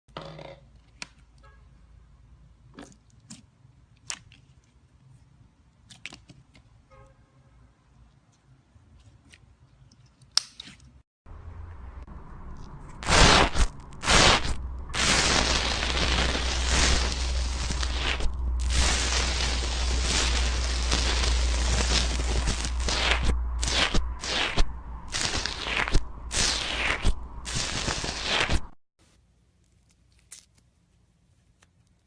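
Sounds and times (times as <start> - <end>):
slime crackling and popping: 13.0 - 28.7.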